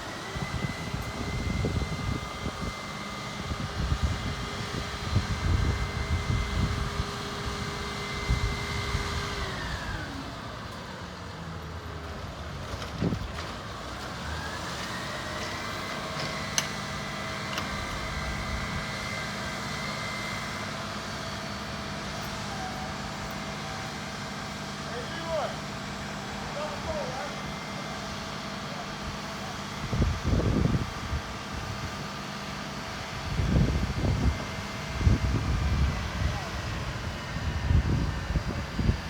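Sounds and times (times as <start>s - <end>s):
crane engine running: 0.0s - 39.0s
wind buffeting microphone: 0.2s - 10.1s, 29.8s - 32.1s, 32.9s - 39.0s.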